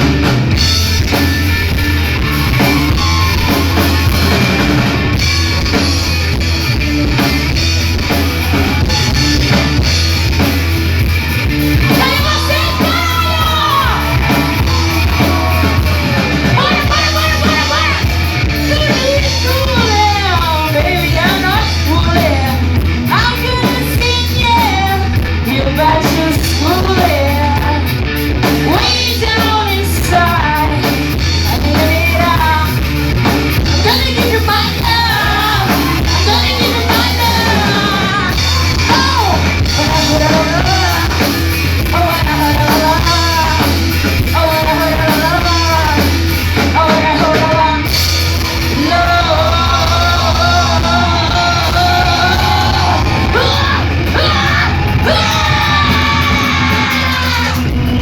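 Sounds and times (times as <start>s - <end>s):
live rock band playing: 0.0s - 58.0s
person singing and yelling: 11.8s - 27.9s, 33.6s - 47.9s, 48.6s - 58.0s.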